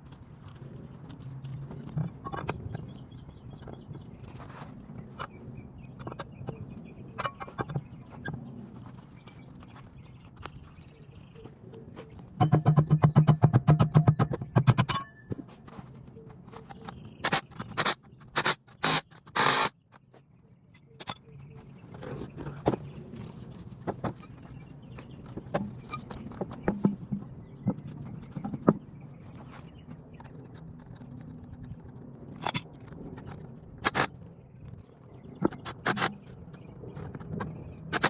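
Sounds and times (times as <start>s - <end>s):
metal tools clinking and scraping: 7.2s - 7.8s, 13.7s - 15.9s, 20.8s - 21.3s, 32.4s - 33.0s
rapid mechanical rattle: 17.1s - 19.7s.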